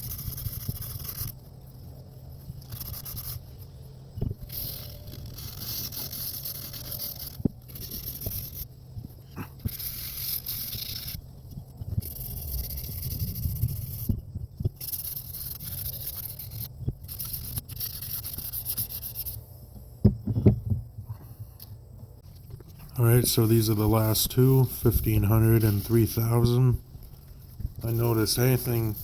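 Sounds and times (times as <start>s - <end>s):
sandpaper scraping on metal: 0.0s - 1.4s, 2.6s - 3.5s, 4.4s - 8.7s, 9.4s - 11.2s, 12.0s - 14.2s, 14.8s - 19.4s, 23.0s - 26.6s, 27.8s - 29.0s
knocks: 20.0s - 20.9s.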